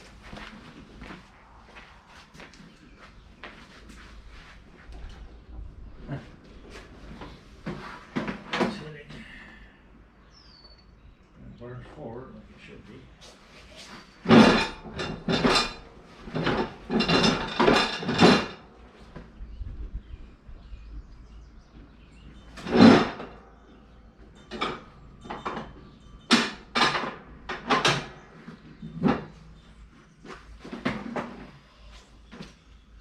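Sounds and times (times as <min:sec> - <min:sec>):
metal clanks and knocks: 0:14.2 - 0:19.4, 0:21.8 - 0:29.7.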